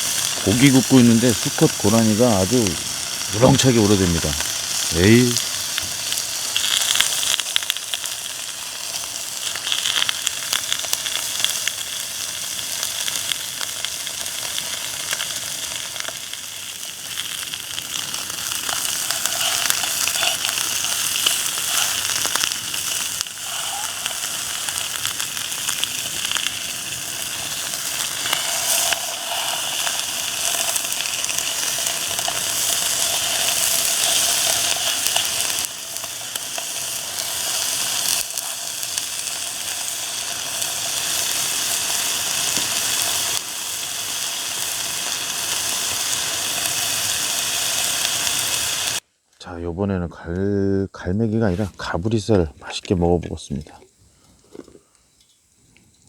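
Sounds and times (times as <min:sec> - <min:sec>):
fat crackling: 0:00.0 - 0:11.8, 0:16.9 - 0:43.7
meat sizzling on a grill: 0:00.0 - 0:49.0.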